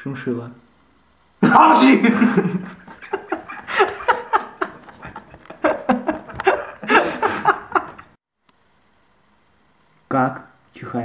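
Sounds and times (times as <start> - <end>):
person laughing hard: 1.5 - 8.1.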